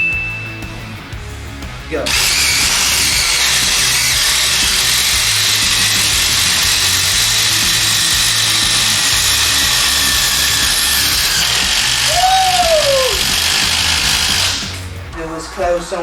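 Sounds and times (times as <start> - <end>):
background music with low beat: 0.0 - 16.0
impact drivers rattling: 2.1 - 14.9.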